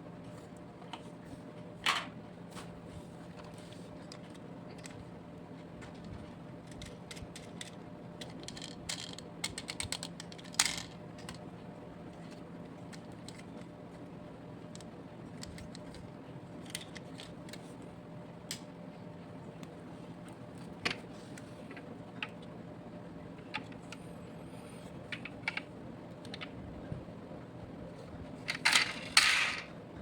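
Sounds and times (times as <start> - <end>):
steady low hum: 0.0 - 30.0
toy vehicles clicking and tapping: 6.8 - 11.4.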